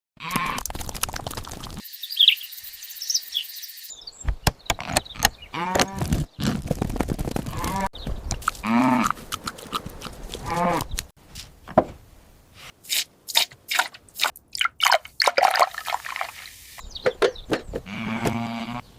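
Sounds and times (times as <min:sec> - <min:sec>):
farm animals calling: 0:07.5 - 0:11.0, 0:16.8 - 0:18.9.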